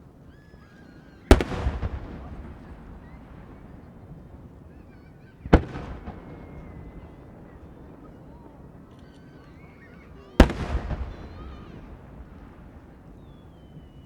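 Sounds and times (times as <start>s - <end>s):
firework shells bursting: 1.3s - 4.6s, 5.4s - 9.4s, 10.1s - 14.0s.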